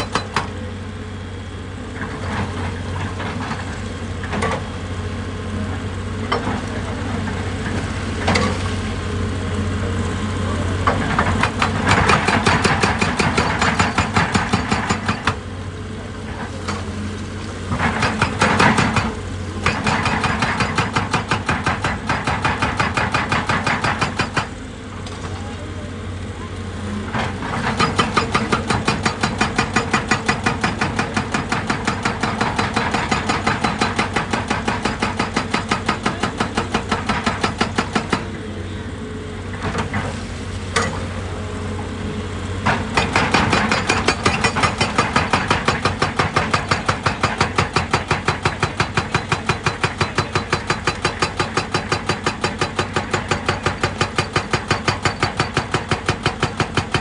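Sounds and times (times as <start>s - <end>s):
machine hammering: 11.2s - 15.4s, 17.8s - 24.5s, 27.8s - 38.3s, 42.7s - 57.0s.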